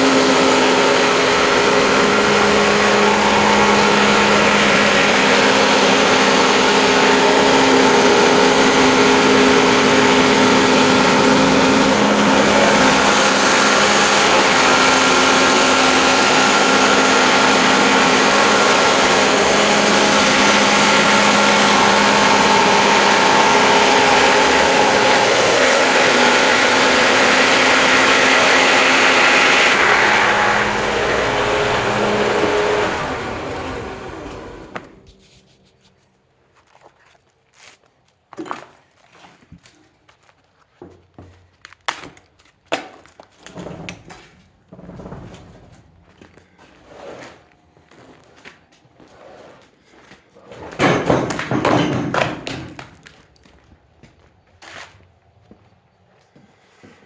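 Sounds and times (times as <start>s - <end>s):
circular sawmill cutting log: 0.0s - 35.3s.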